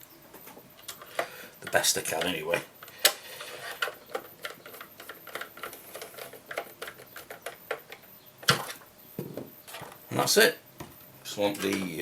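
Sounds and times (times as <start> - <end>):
plastic parts clicking: 0.8 - 8.9.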